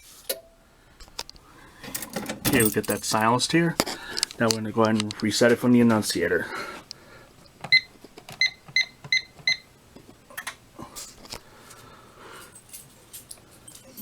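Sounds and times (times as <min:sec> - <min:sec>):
alarm keypad beeping: 0:07.7 - 0:09.7.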